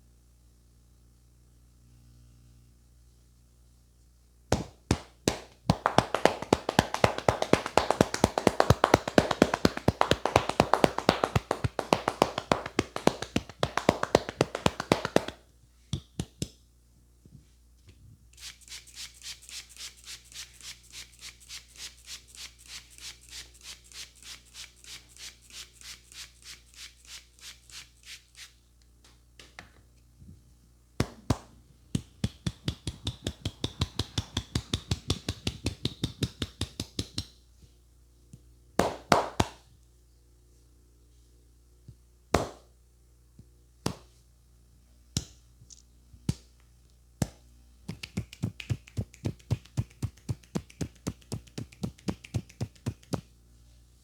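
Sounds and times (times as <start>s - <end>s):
hands slapping a head: 4.5s - 16.6s, 31.0s - 37.4s, 38.8s - 39.6s, 42.4s - 42.7s, 43.8s - 44.2s, 46.2s - 46.6s, 47.2s - 53.3s.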